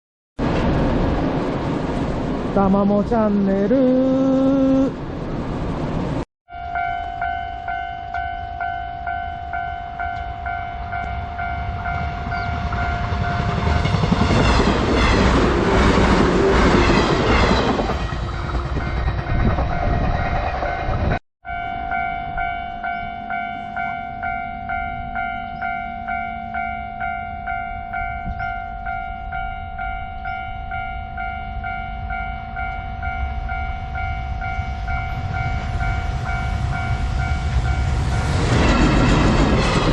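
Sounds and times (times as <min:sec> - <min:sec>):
low rumble of rail traffic: 0:00.4 - 0:39.9
train passing over crossing: 0:00.4 - 0:39.9
level crossing alarm clanging: 0:06.5 - 0:13.2.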